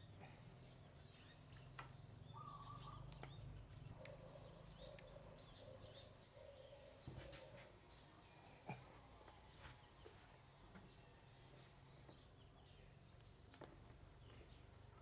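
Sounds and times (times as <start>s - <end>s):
faint bird chirps: 1.2s - 7.6s.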